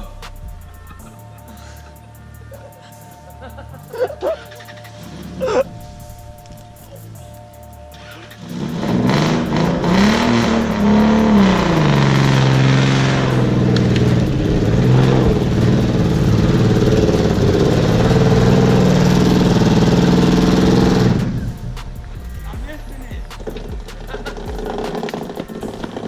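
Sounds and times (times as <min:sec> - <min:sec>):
engine revving hard: 0:08.0 - 0:26.0.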